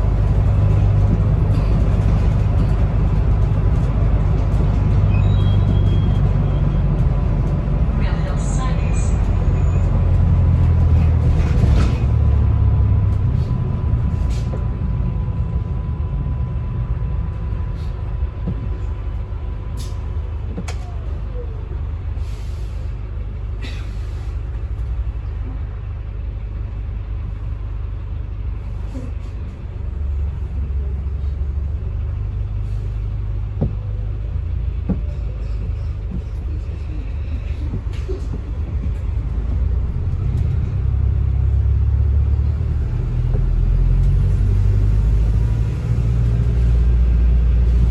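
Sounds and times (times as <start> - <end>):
bus engine and road rumble: 0.0 - 47.9
air brakes hissing: 22.2 - 23.0.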